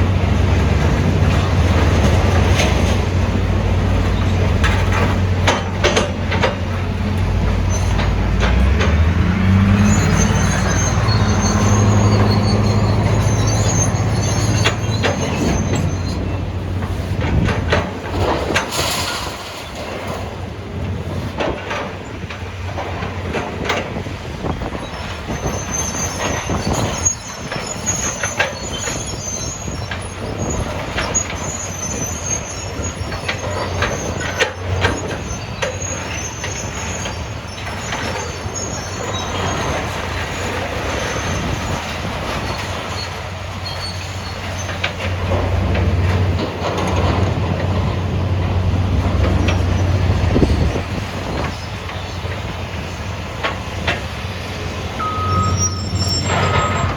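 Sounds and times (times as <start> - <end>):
excavator diesel engine running: 0.0 - 56.9
metal squealing and scraping: 3.8 - 17.5, 24.4 - 56.9
metal clanks and bangs: 14.3 - 24.0, 54.7 - 56.9.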